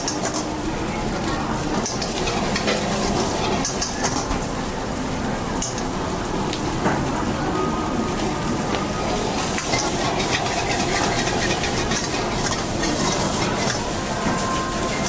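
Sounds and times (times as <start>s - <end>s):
rice sizzling in a wok: 0.0s - 7.4s, 8.0s - 15.0s
metal spatula scraping a pan: 9.6s - 13.8s.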